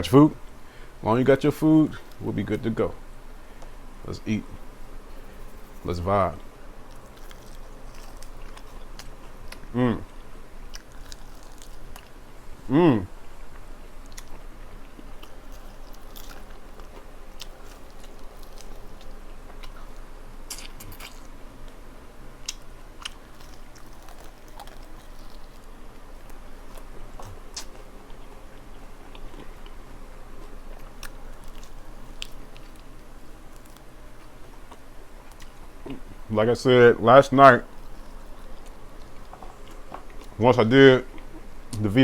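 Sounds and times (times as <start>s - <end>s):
faint steady hum: 0.0s - 42.0s
chewing crispy fried chicken: 3.6s - 21.8s, 22.4s - 36.3s, 37.0s - 41.9s.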